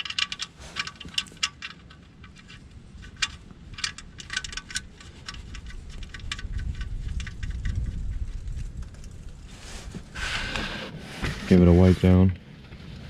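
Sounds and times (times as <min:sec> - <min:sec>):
metallic clicks and clinks: 0:00.0 - 0:08.2
low rumble: 0:02.6 - 0:12.4.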